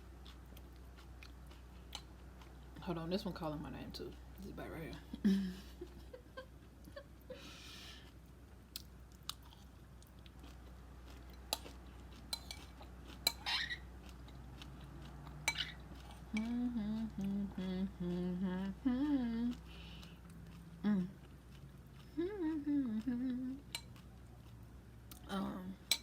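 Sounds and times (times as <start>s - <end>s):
chewing crunchy cereal: 0.0s - 5.0s, 7.9s - 26.0s
person humming a tune: 16.3s - 19.7s, 20.8s - 21.2s, 22.1s - 23.7s.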